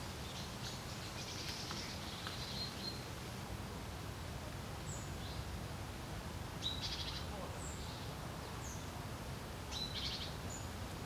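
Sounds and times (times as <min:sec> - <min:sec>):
small bird singing: 0:00.2 - 0:03.1, 0:04.8 - 0:05.5, 0:06.6 - 0:09.0, 0:09.7 - 0:10.8.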